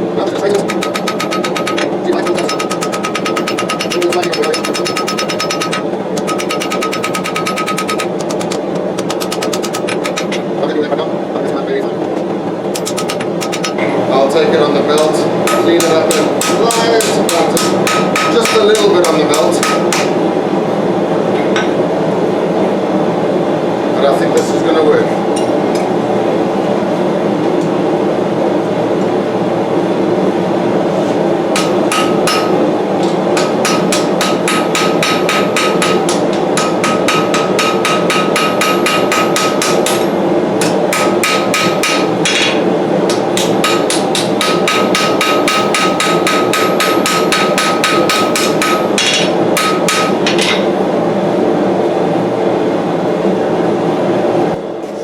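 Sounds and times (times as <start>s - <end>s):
gas forge burner roaring: 0.0s - 55.0s
hammer striking steel on anvil: 0.3s - 10.6s, 12.7s - 13.9s, 15.0s - 20.2s, 31.5s - 50.6s.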